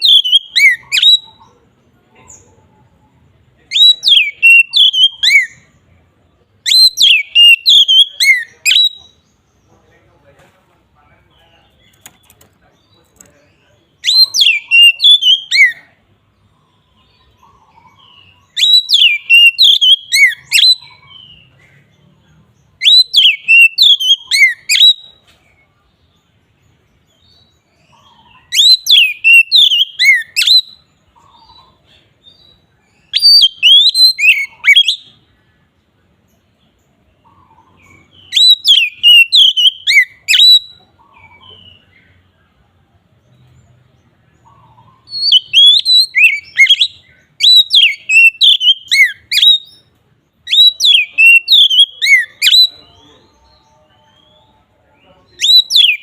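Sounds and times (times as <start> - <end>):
bird singing rich whistles: 0.0 - 1.4, 3.7 - 5.7, 6.7 - 9.2, 14.0 - 15.8, 18.0 - 21.4, 22.8 - 25.2, 28.4 - 30.8, 32.3 - 35.2, 38.0 - 41.8, 45.0 - 53.1, 55.4 - 56.0.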